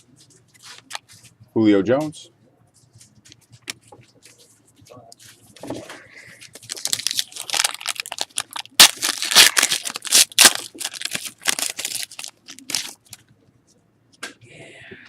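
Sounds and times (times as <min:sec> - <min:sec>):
foil wrapper crinkling and tearing: 0:06.4 - 0:13.2.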